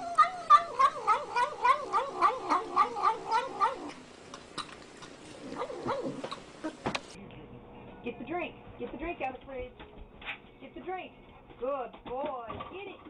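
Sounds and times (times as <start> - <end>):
cat yowling: 0.0 - 4.0.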